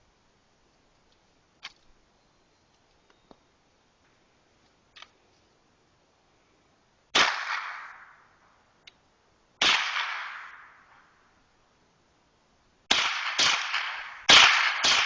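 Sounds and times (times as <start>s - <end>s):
rifle shots with echo: 7.2s - 8.3s, 9.6s - 11.0s, 12.9s - 15.0s.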